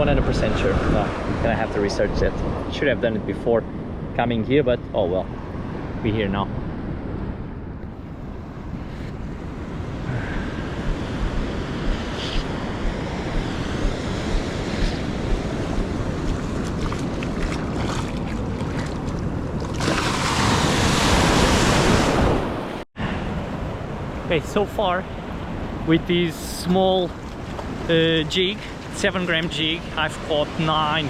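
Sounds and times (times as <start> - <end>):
ocean surf rumble: 5.1 - 31.0
wind buffeting microphone: 6.5 - 22.6.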